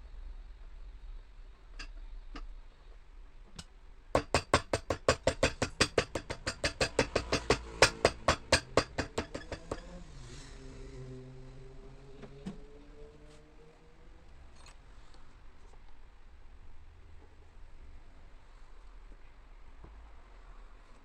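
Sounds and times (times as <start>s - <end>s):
hammer tapping on shoe: 4.2s - 9.9s.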